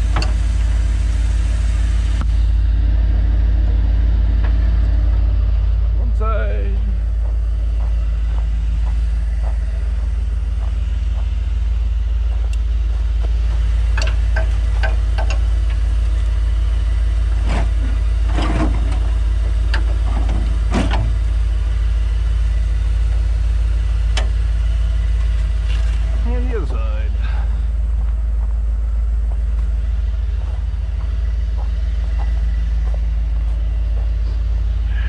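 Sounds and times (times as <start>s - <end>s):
vehicle engine idling: 0.0s - 35.0s
knocks and clatters: 12.2s - 16.2s, 17.2s - 21.5s.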